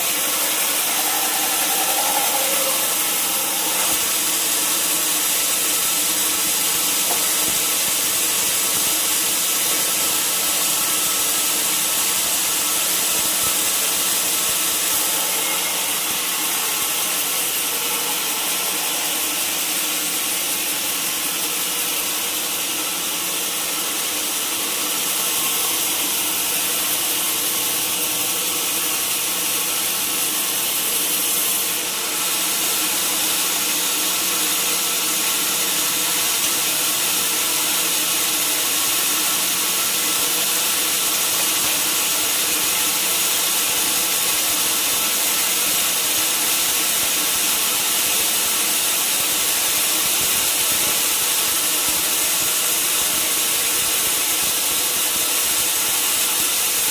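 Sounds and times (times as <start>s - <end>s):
machine hum: 0.0s - 7.5s, 12.4s - 21.9s
saw cutting through log: 0.0s - 22.7s.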